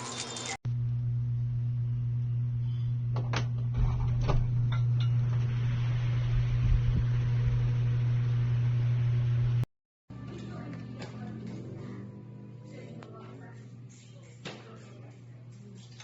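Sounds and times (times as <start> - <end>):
ceiling fan humming: 4.3 - 9.6.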